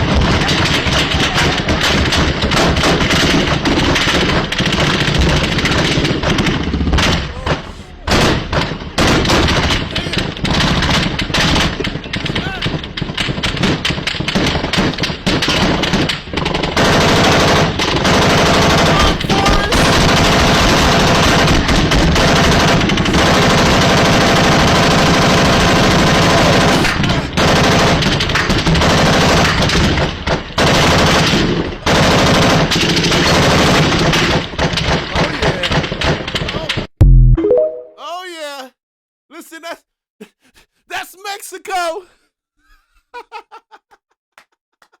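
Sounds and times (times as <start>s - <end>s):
automatic gunfire: 0.0s - 7.2s, 8.1s - 36.4s.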